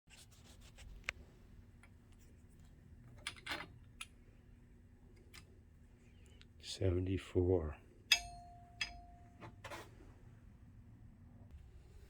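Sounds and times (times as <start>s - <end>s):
faint steady low hum: 0.2s - 12.0s.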